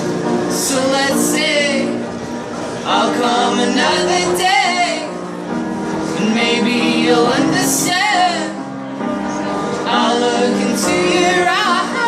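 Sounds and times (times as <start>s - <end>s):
man and woman singing together: 2.9s - 5.1s, 6.2s - 8.6s, 9.9s - 12.0s.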